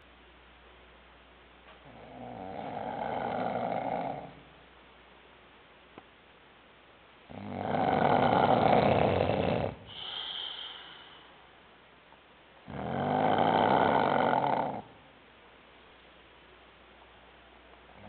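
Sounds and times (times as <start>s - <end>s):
loud rasping snores: 1.8s - 4.4s, 7.3s - 10.7s, 12.7s - 14.9s
soft whistling breath: 9.9s - 11.5s.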